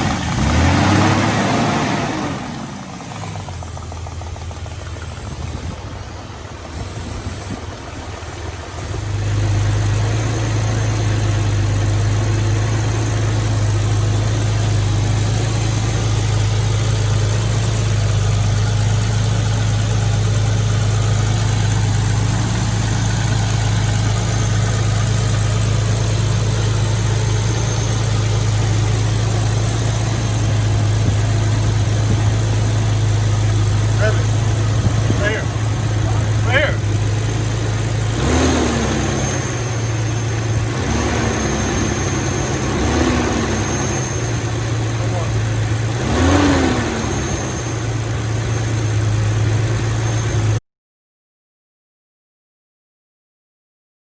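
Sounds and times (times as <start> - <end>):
engine idling: 0.0 - 50.6.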